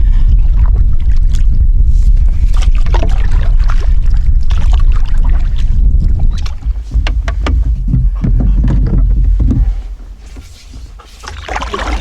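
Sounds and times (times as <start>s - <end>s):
wind buffeting microphone: 0.0s - 12.0s
paddle splashing water: 2.4s - 12.0s
light knocks: 6.9s - 10.8s.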